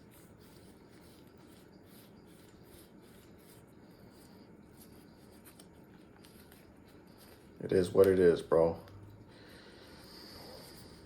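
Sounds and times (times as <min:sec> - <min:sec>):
scratchy rubbing of pistol parts: 0:00.0 - 0:08.1.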